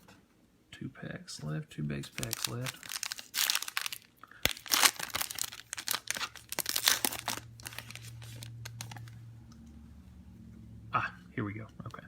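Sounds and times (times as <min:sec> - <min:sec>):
foil wrapper tearing and crinkling: 0:02.0 - 0:09.1.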